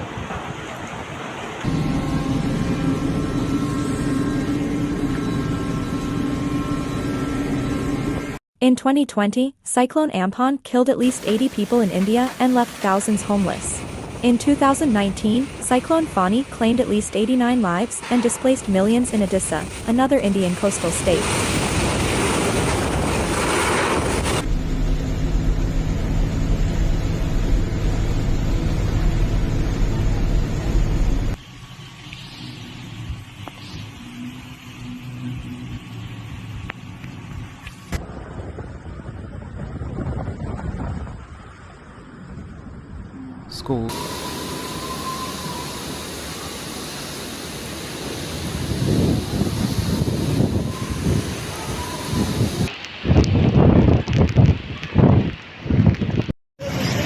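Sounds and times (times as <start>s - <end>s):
rushing noise like wind: 0.0s - 6.0s, 20.7s - 57.0s
engine rumbling steadily: 1.4s - 8.4s, 24.4s - 41.2s
motor humming steadily: 1.6s - 8.4s
loud rushing noise: 20.5s - 31.4s, 43.9s - 53.9s.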